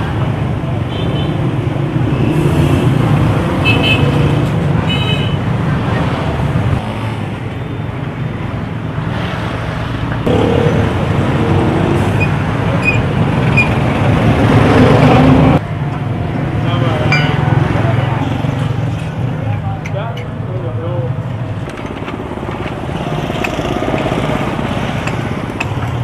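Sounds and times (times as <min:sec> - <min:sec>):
vehicle engines running: 0:10.0 - 0:26.0.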